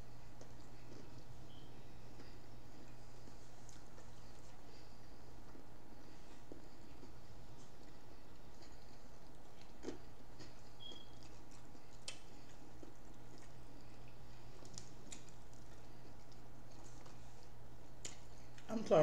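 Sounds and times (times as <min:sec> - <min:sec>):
people chewing food: 0:00.0 - 0:19.0
steady low hum: 0:00.0 - 0:19.0.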